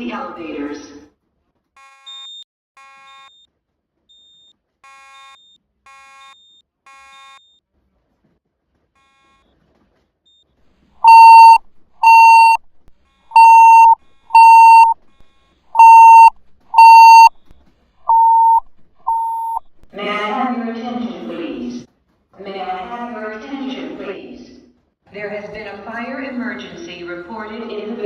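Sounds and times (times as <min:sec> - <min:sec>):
alarm voice messages: 0:11.0 - 0:12.6, 0:13.4 - 0:14.9, 0:15.8 - 0:17.3, 0:18.1 - 0:19.6
faint beeps: 0:11.0 - 0:12.6, 0:13.4 - 0:15.0, 0:15.8 - 0:17.3, 0:18.1 - 0:19.6
fire alarm beeping: 0:11.0 - 0:12.6, 0:13.4 - 0:15.0, 0:15.8 - 0:17.3, 0:18.1 - 0:19.6.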